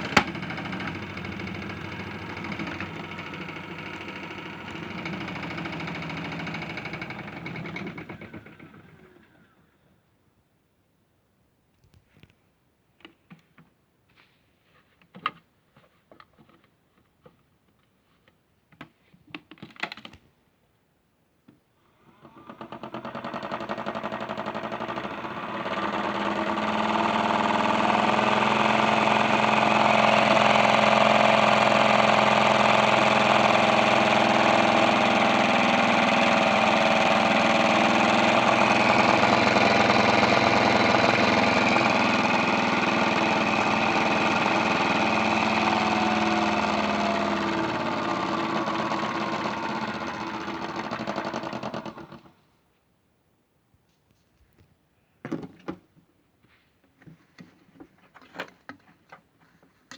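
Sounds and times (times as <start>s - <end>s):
toy washing machine motor spinning: 22.7s - 52.0s.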